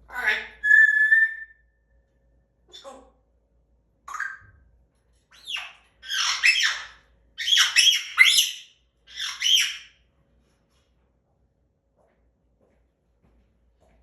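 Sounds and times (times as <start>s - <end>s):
parrot squawking: 0.1s - 1.5s, 4.1s - 4.5s, 5.3s - 9.9s.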